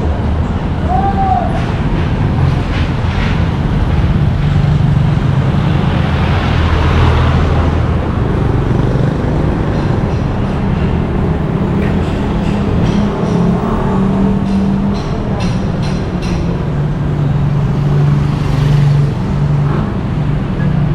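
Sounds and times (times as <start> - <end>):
vehicle passing: 0.0 - 15.0
road traffic: 0.0 - 20.9
vehicle engine humming: 0.0 - 20.9.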